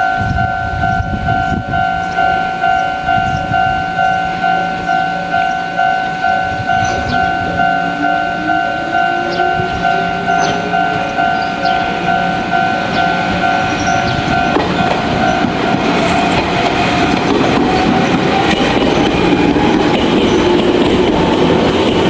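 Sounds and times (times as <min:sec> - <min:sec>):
level crossing warning bell: 0:00.0 - 0:22.0
train wheels clattering on rails: 0:09.0 - 0:22.0.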